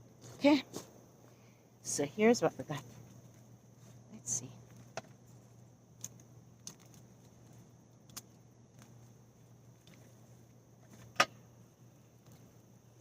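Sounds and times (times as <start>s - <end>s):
hands clicking in soil: 6.0s - 11.3s.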